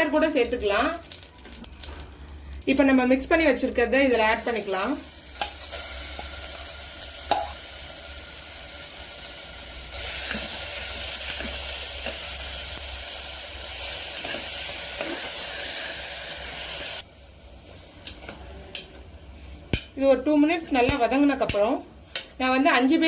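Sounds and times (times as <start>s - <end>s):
food sizzling in hot oil: 0.0s - 17.6s.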